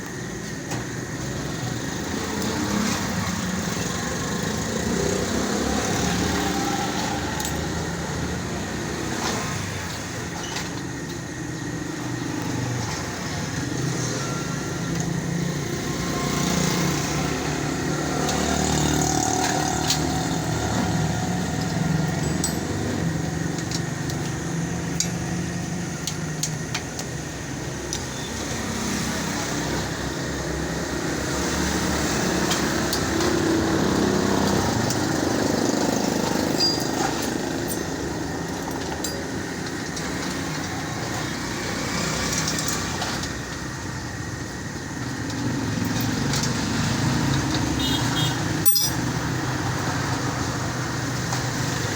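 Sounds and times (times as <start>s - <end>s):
motor vehicles passing: 1.2s - 10.2s, 11.6s - 26.4s, 27.4s - 51.9s
metallic clicks from bicycle work: 21.6s - 27.2s.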